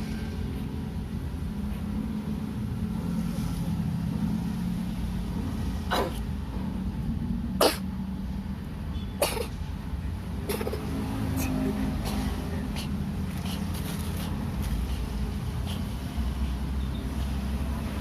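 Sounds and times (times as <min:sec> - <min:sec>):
cat coughing: 0:05.9 - 0:06.2, 0:07.6 - 0:07.9, 0:09.2 - 0:09.6, 0:10.4 - 0:12.9.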